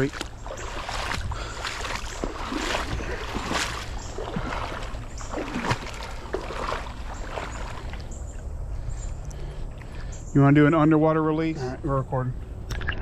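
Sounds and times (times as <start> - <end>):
creek water splashing: 0.0 - 10.2.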